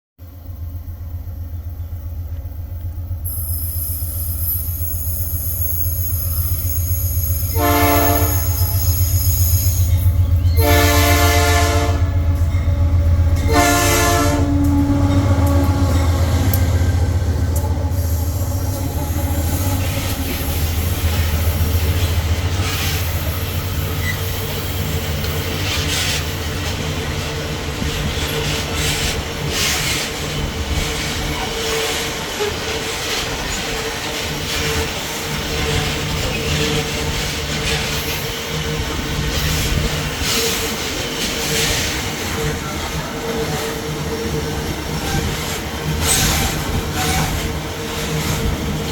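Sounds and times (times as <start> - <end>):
locomotive engine rumble: 0.2 - 48.9
wheel squeal: 3.3 - 10.7, 18.0 - 26.4
train horn: 7.4 - 9.2, 9.8 - 21.4, 42.3 - 48.5.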